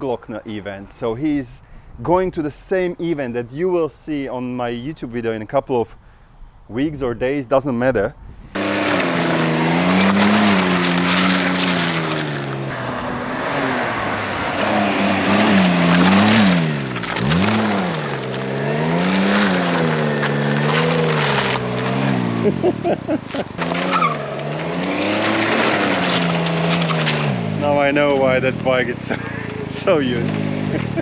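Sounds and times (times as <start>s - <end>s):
trike engine revving: 8.5s - 31.0s.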